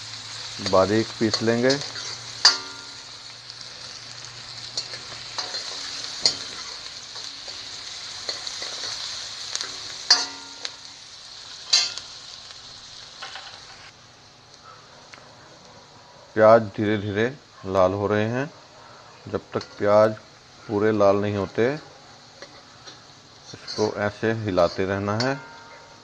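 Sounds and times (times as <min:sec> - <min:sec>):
onions sizzling in a pan: 0:00.0 - 0:26.0
spatula scraping a pan: 0:00.6 - 0:03.0, 0:04.6 - 0:10.7, 0:22.4 - 0:25.9.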